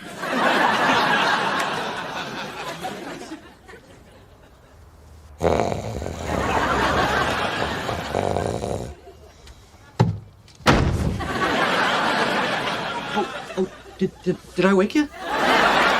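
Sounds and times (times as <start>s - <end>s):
studio audience laughter: 0.0s - 4.6s, 6.3s - 8.1s, 11.2s - 14.0s, 15.1s - 15.9s
man snoring loudly: 5.4s - 9.0s, 15.1s - 15.9s.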